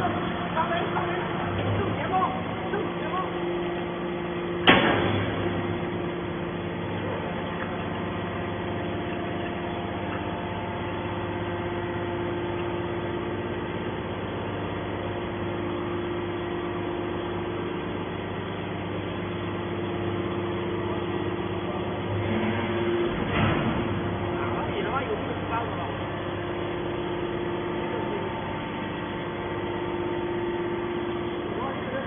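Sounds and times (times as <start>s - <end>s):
hydraulic baler humming: 0.0s - 32.0s.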